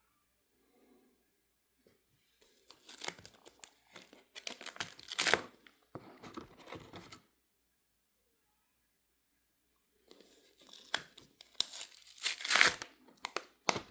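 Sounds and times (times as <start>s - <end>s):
plastic pages crinkling: 2.4s - 7.2s, 10.1s - 13.9s.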